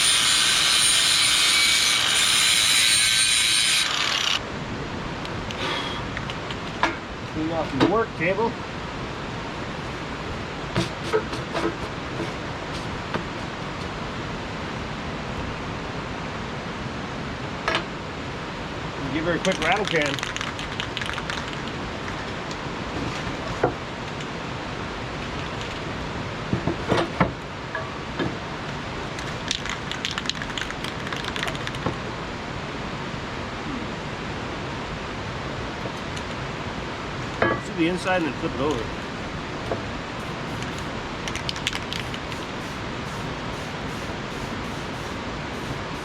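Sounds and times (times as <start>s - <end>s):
steady hiss: 19.0s - 22.3s, 40.1s - 46.0s
spray can mixing ball rattling: 19.4s - 21.8s, 29.2s - 31.8s, 40.2s - 46.0s
small hard objects clicking: 19.4s - 22.2s, 29.2s - 31.9s, 40.5s - 42.5s.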